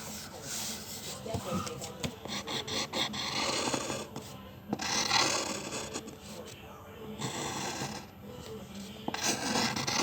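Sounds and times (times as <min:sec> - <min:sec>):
drawing tool scratching paper: 0:00.0 - 0:06.4, 0:07.2 - 0:08.1, 0:09.1 - 0:10.0.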